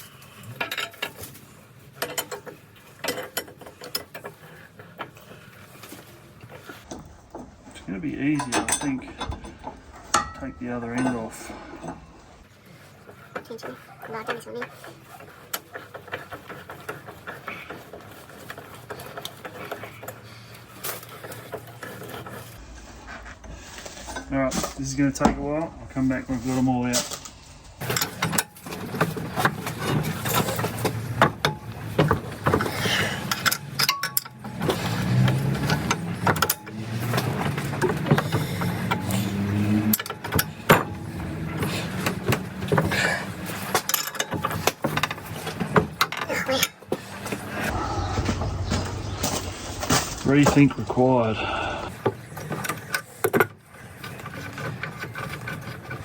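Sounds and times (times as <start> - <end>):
hand tools clinking on bolts: 7.8 - 12.0, 29.7 - 45.3
steady hum: 47.6 - 51.9.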